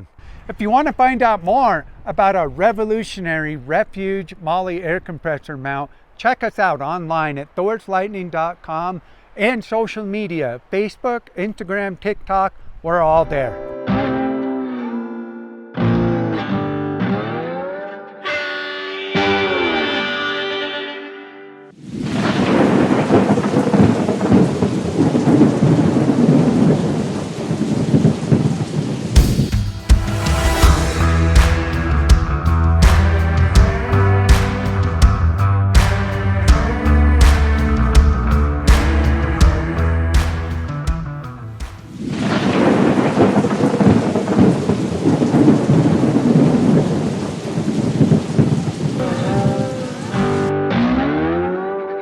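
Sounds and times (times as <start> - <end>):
rain-like hiss: 0.0 - 13.6, 21.7 - 33.7, 41.4 - 50.5
rolling thunder rumble: 21.8 - 40.8, 41.5 - 50.2.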